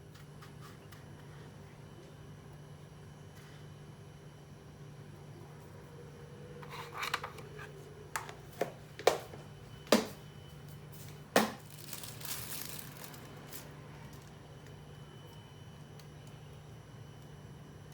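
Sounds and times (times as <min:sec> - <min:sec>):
packet rustling and crinkling: 0:11.4 - 0:14.3.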